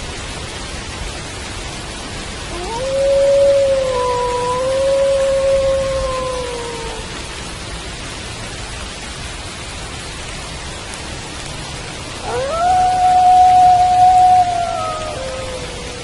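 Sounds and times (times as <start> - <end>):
steady rain: 0.0 - 16.0
wolf howling: 2.5 - 7.3, 12.2 - 16.0.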